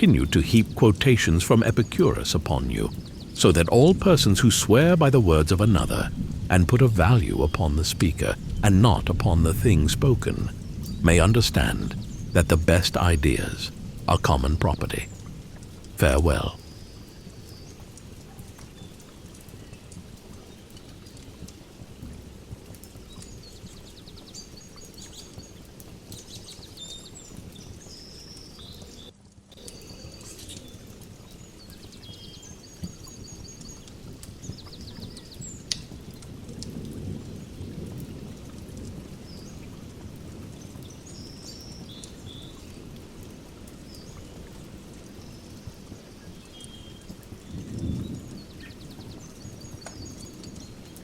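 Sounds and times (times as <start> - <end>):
distant thunder rumble: 0.0 - 20.8, 33.8 - 51.0
birds chirping and trilling: 0.0 - 21.8, 22.7 - 36.2, 40.5 - 51.0
steady hiss: 0.0 - 28.4
fire crackling pops: 0.0 - 51.0.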